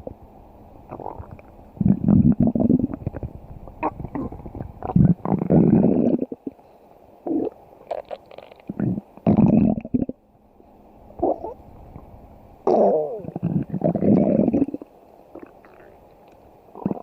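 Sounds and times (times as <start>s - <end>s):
stomach growling and gurgling: 0.9s - 6.6s, 7.2s - 10.2s, 12.7s - 17.0s.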